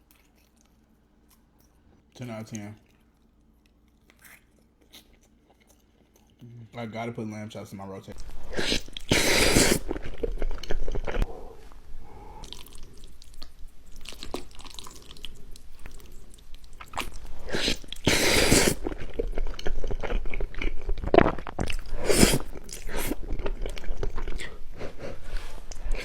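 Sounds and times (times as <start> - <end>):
person chewing and biting: 2.8 - 6.4, 8.4 - 11.3, 12.4 - 26.0.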